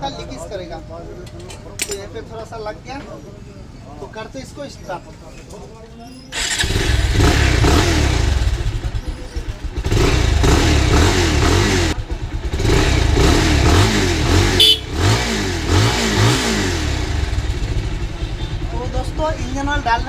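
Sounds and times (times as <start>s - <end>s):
motorcycle engine revving: 6.3s - 20.0s.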